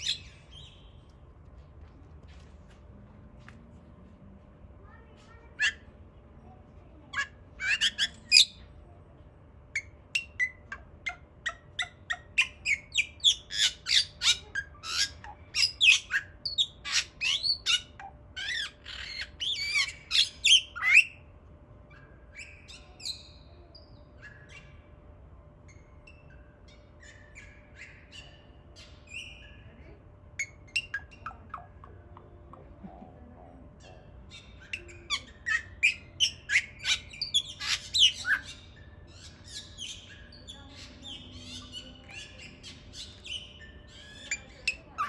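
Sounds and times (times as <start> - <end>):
bird chirping and squawking: 0.0 - 0.9, 7.2 - 8.6, 9.8 - 21.2, 25.8 - 29.8, 30.4 - 31.9, 33.8 - 45.0.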